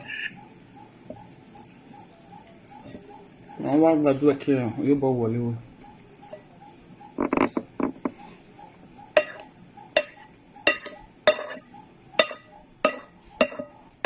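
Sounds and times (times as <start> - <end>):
cutlery scraping a dish: 0.0 - 0.4, 9.2 - 13.7
cutlery clinking on a dish: 9.2 - 13.8.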